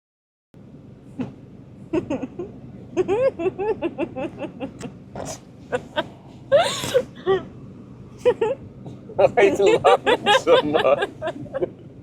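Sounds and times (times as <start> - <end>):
person laughing: 2.0 - 4.9, 5.7 - 7.4, 8.2 - 8.6, 9.4 - 11.8.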